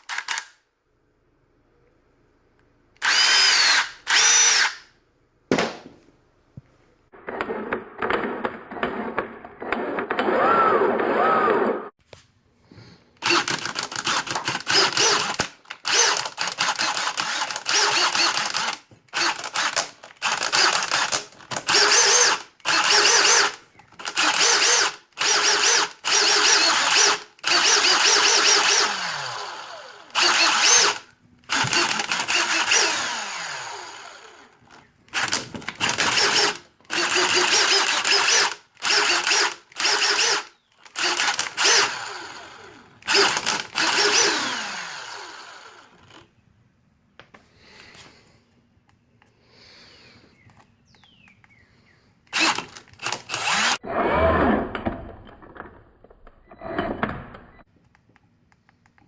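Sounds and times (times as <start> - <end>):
impact driver bursts: 3.0 - 4.9, 13.2 - 34.5, 35.1 - 46.3, 52.3 - 53.8.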